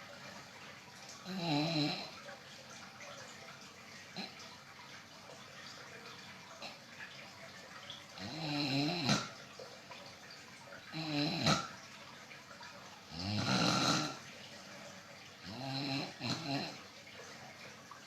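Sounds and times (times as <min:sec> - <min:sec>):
person snoring: 0:13.2 - 0:14.2.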